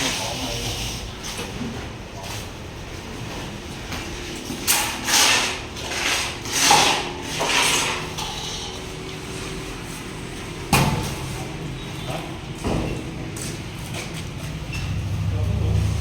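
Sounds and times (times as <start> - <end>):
rough scraping strokes: 4.9 - 8.7.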